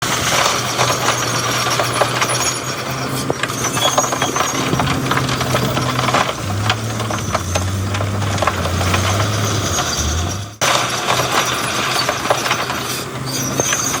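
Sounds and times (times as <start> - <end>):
diesel engine running: 0.1 - 13.3
clanks and knocks: 4.4 - 10.3.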